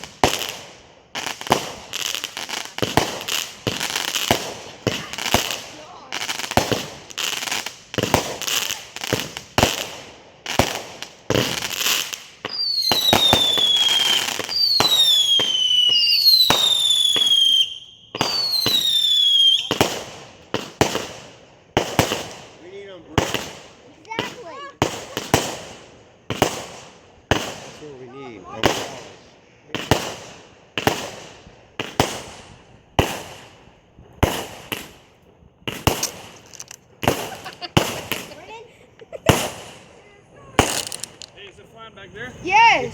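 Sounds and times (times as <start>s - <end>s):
fireworks shots with crackle: 0.0s - 41.6s
fireworks whistles falling in pitch: 11.4s - 20.0s.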